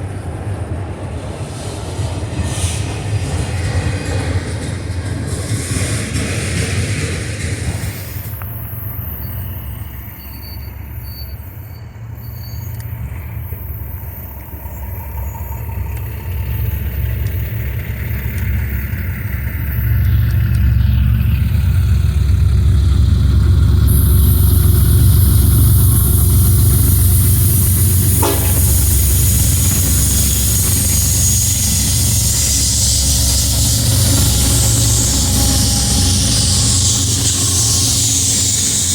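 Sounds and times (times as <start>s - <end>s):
diesel locomotive engines rumbling: 0.0s - 38.9s.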